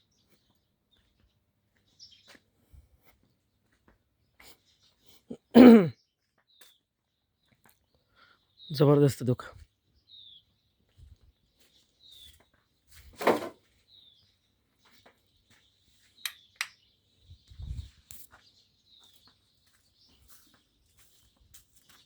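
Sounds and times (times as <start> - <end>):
bird chirping: 6.5 - 12.6, 13.8 - 22.0.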